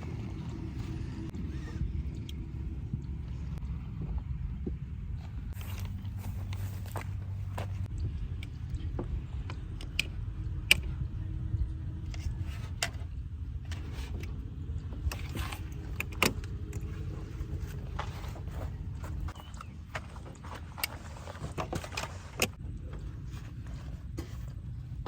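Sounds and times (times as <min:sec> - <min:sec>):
low rumble: 0:00.0 - 0:19.7.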